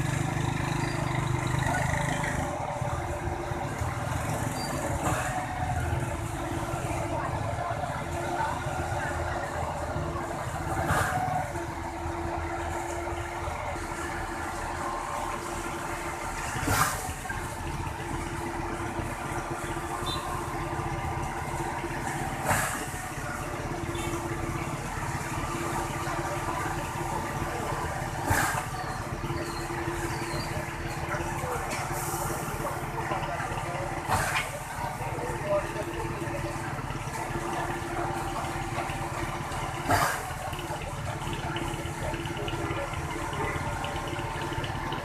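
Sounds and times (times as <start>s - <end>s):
truck engine hum: 0.0s - 45.0s.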